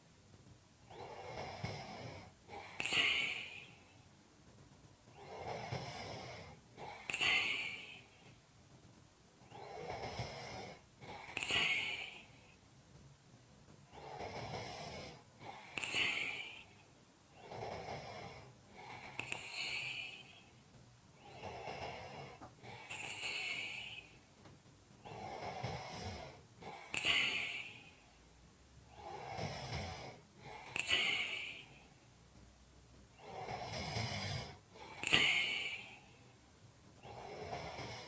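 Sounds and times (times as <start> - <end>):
person breathing heavily with snore: 0.9 - 4.0, 5.1 - 8.4, 9.5 - 12.6, 13.9 - 20.6, 21.2 - 24.2, 25.0 - 28.2, 28.9 - 32.0, 33.2 - 36.3, 37.0 - 38.0.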